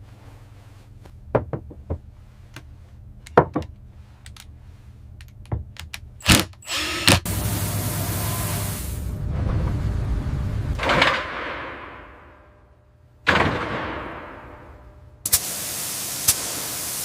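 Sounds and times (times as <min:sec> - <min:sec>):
steady rushing noise: 0:07.4 - 0:12.6.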